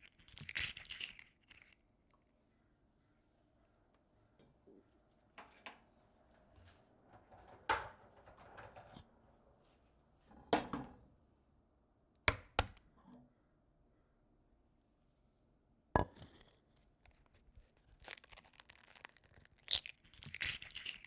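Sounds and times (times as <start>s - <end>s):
eggshells cracking: 0.0s - 1.8s, 17.1s - 21.0s.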